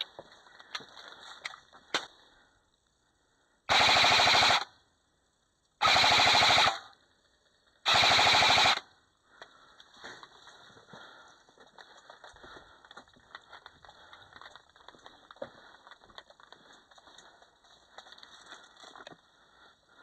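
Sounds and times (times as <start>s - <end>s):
airsoft gun full-auto bursts: 3.7s - 4.7s, 5.8s - 7.0s, 7.8s - 8.9s.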